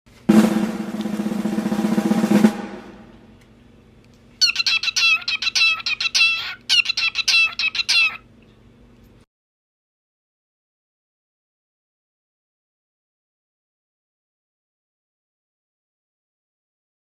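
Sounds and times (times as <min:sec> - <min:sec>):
cockatiel chirping: 0:04.4 - 0:08.3.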